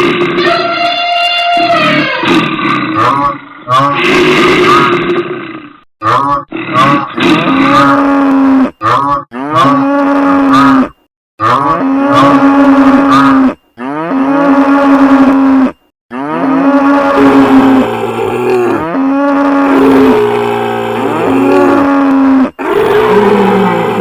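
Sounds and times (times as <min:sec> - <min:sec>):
cattle mooing: 0:06.0 - 0:10.8, 0:11.4 - 0:15.4, 0:16.1 - 0:18.9, 0:19.6 - 0:24.0.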